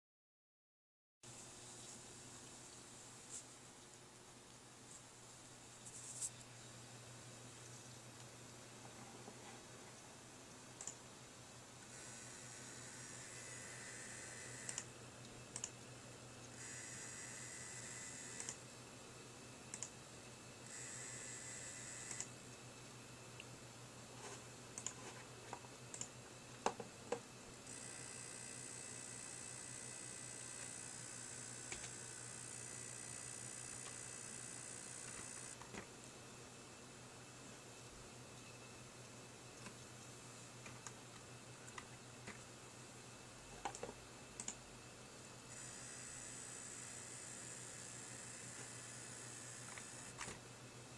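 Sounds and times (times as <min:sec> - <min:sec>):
power supply coil whine: 0:04.4 - 0:35.9, 0:37.2 - 0:50.9
sharp clicks: 0:25.9 - 0:26.1, 0:43.6 - 0:44.6.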